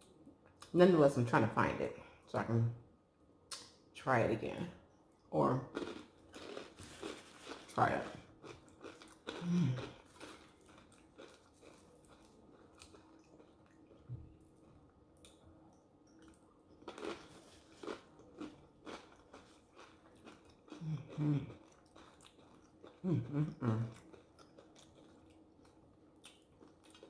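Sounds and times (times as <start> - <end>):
chewing and biting food: 5.7 - 27.0
low mouth sounds: 20.8 - 21.5, 23.0 - 24.0.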